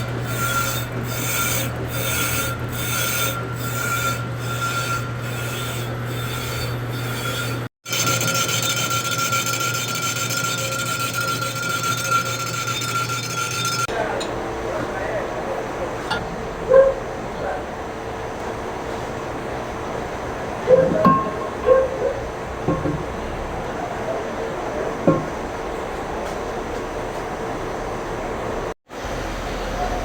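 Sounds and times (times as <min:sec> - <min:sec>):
lathe scraping cut: 0:00.0 - 0:13.9.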